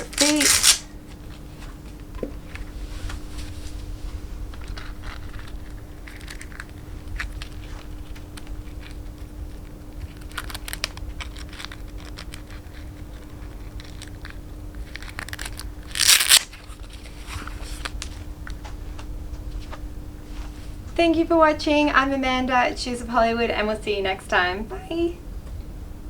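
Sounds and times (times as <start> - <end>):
handling rustles and clicks: 0.0 - 0.9, 4.5 - 18.8
loud rasping crinkling rustle: 0.0 - 1.7, 3.1 - 18.3
steady low hum: 0.0 - 26.0.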